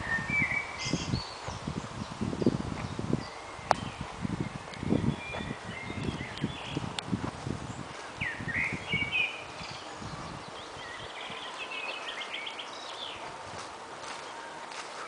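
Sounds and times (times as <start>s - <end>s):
songbirds chirping and trilling: 0.0s - 15.0s
steady outdoor hiss: 0.0s - 15.0s.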